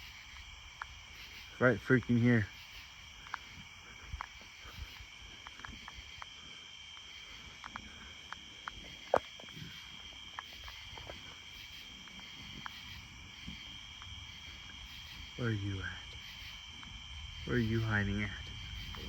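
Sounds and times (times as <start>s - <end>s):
crickets chirping: 0.0s - 19.0s
faint clicks: 0.3s - 1.3s, 2.6s - 14.8s.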